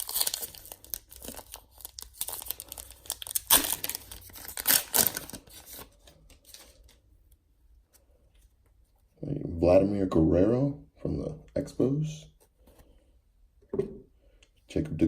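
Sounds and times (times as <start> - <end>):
card pack wrapper tearing: 0.0 - 7.0.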